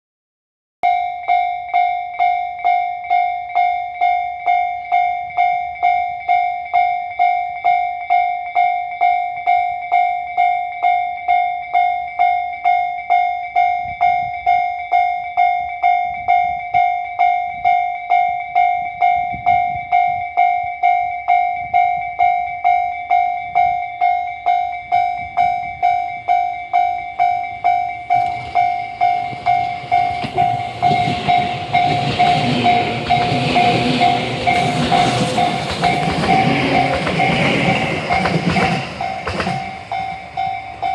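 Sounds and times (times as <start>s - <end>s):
level crossing warning bell: 0.8s - 40.9s
train rumble: 24.9s - 40.9s.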